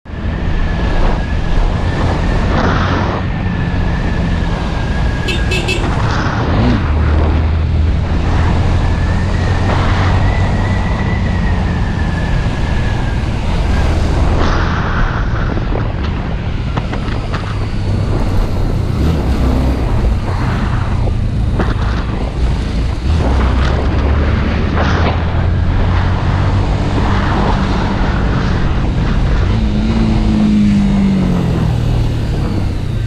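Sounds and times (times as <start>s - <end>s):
road noise: 0.0s - 33.0s
motorcycle engine running: 5.3s - 6.2s.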